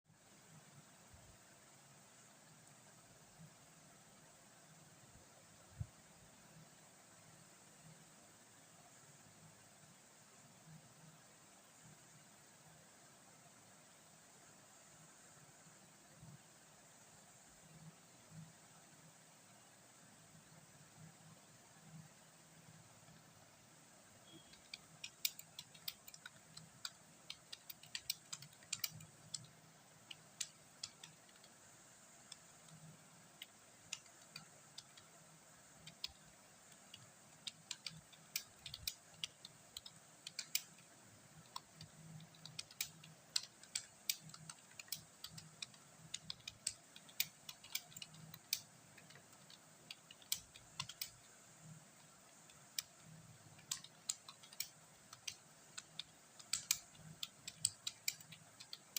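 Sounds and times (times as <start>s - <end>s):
computer keyboard typing: 24.2s - 58.9s.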